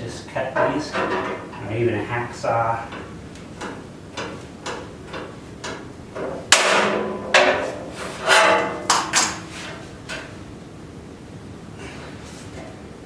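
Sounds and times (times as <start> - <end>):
loud metallic clanks: 0.5 - 10.7.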